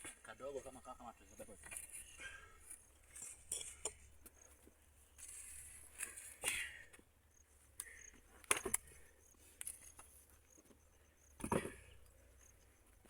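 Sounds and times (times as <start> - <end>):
stones knocking and scraping: 8.4 - 12.0.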